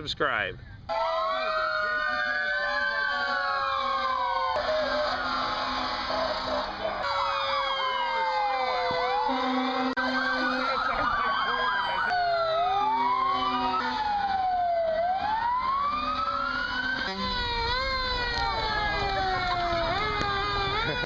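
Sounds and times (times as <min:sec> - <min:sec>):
emergency vehicle sirens wailing: 0:00.9 - 0:21.0.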